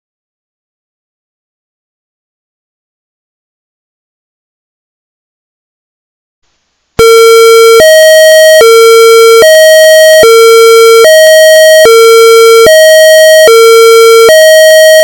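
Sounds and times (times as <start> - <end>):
two-tone electronic alert signal: 7.0 - 15.0.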